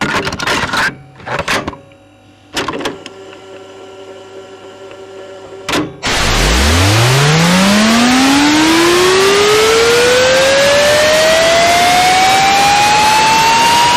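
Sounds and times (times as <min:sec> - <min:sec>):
mechanical whirring bursts: 0:06.0 - 0:13.6
steady hum: 0:06.0 - 0:13.6
harsh static noise: 0:06.0 - 0:13.9
low rising tone: 0:06.0 - 0:13.9.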